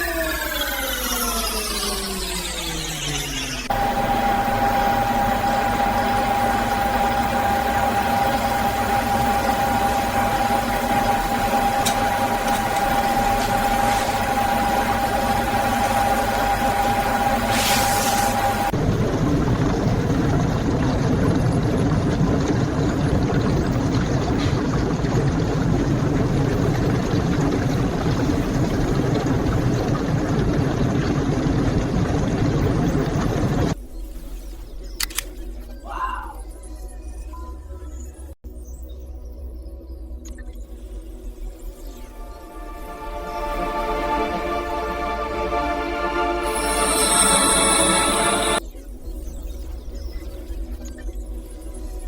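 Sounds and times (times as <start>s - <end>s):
high-pitched whine: 0.0s - 21.0s, 39.1s - 49.8s
factory machinery humming: 0.0s - 33.8s, 42.0s - 48.6s
low mechanical rumble: 3.6s - 33.8s, 41.8s - 48.6s
faint click: 35.0s - 35.4s.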